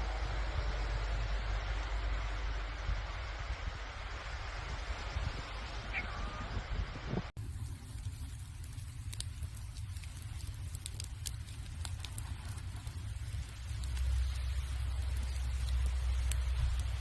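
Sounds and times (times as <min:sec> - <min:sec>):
low rumble: 0:00.0 - 0:17.0
firewood crackling and popping: 0:07.3 - 0:17.0.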